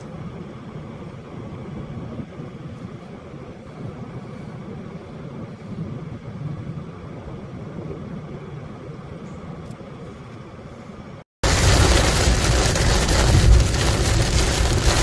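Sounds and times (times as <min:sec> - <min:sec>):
vehicle engine rumble: 0:00.0 - 0:15.0
loud steady rushing noise: 0:10.7 - 0:15.0.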